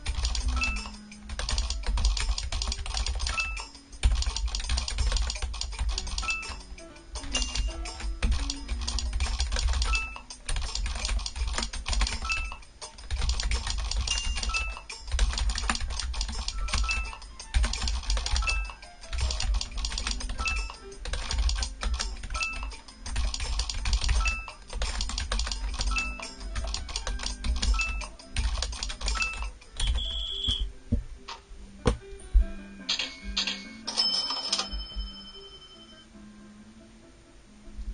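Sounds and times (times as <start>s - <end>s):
fast clicking: 0.0s - 6.6s, 7.2s - 30.0s
background music: 0.0s - 37.9s
short high beeps: 29.2s - 30.7s.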